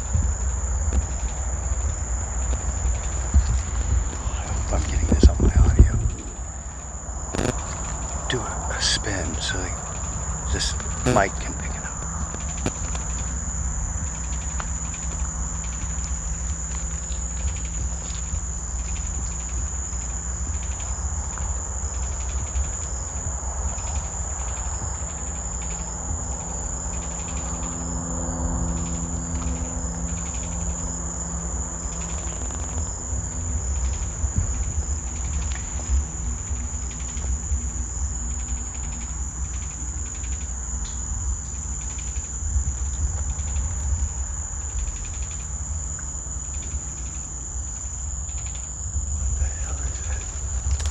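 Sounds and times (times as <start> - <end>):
low droning tones: 0.0 - 21.4, 22.1 - 50.9
cricket-like insect chorus: 0.0 - 50.9
low rumble: 1.7 - 15.2.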